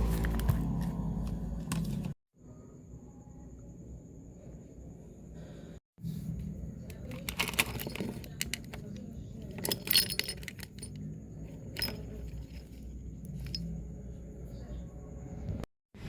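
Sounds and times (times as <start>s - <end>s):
small hard objects clinking: 7.0s - 13.8s.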